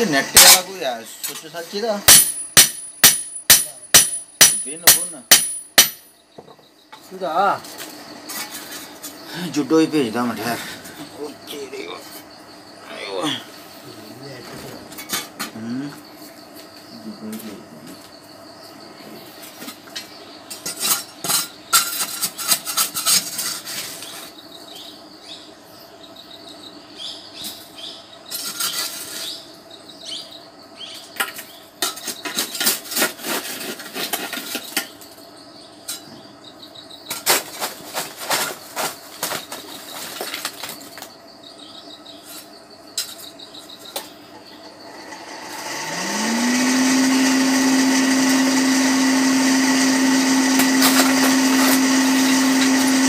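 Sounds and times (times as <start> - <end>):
hammer clinking on metal: 2.1 - 6.2
forge blower hum: 44.9 - 53.0.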